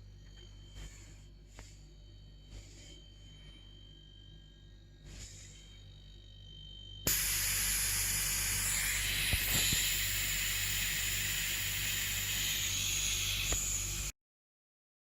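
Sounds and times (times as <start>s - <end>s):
air hissing: 7.1s - 14.1s
compressor humming: 7.1s - 14.1s.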